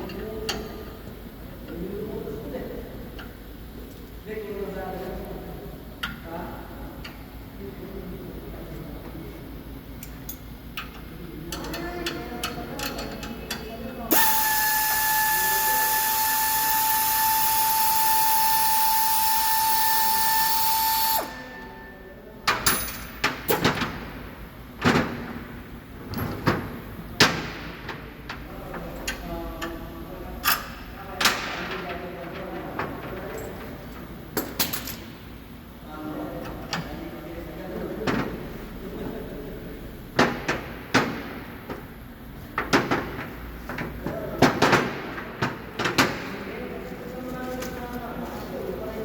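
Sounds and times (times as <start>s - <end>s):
power tool whining: 14.1s - 21.5s.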